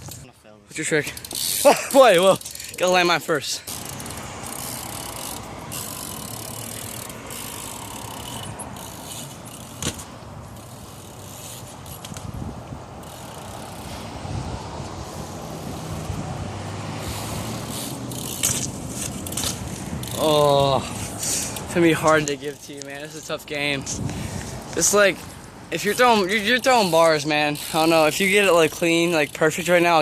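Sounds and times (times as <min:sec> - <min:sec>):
steady outdoor noise: 0:00.0 - 0:30.0
bike rolling over hard ground: 0:17.1 - 0:20.3.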